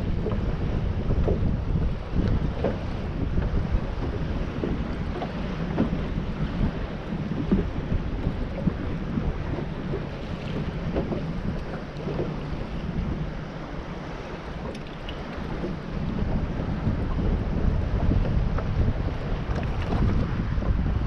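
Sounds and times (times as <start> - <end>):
water lapping at hull: 0.0 - 21.0
wind buffeting microphone: 0.0 - 21.0.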